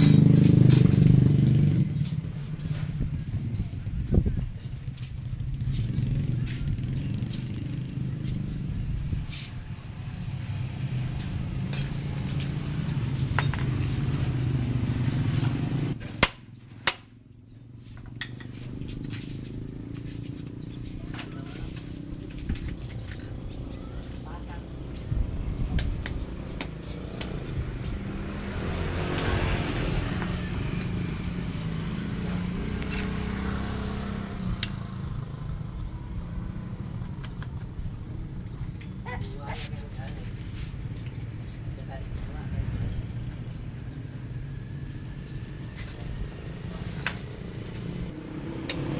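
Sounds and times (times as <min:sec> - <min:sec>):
light metallic clinks: 0:00.0 - 0:01.6, 0:11.7 - 0:13.9, 0:32.8 - 0:33.5
motorcycle engine running: 0:00.0 - 0:48.4.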